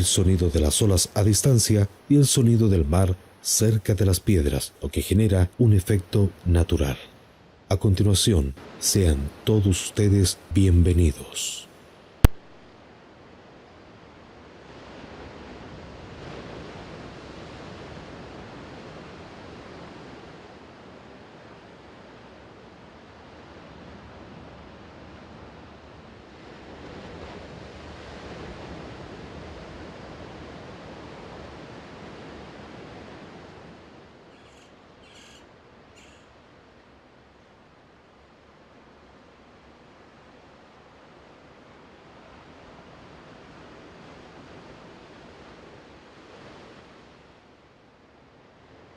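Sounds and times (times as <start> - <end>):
seagulls calling: 34.3 - 36.4.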